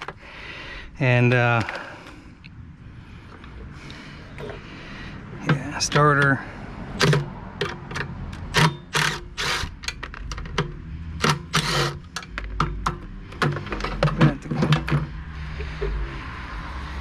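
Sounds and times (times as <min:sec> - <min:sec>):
tools clicking and knocking: 0:07.0 - 0:15.1.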